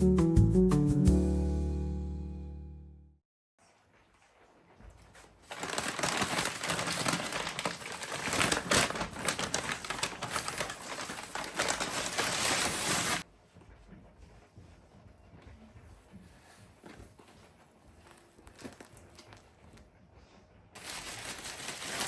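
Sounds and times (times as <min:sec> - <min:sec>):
crinkling and rustling: 0:03.6 - 0:13.3, 0:16.1 - 0:22.0.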